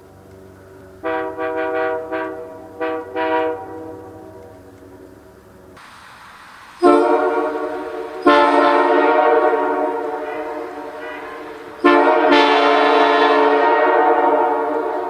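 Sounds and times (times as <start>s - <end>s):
locomotive air horn blasts: 1.0s - 4.7s, 6.8s - 15.0s.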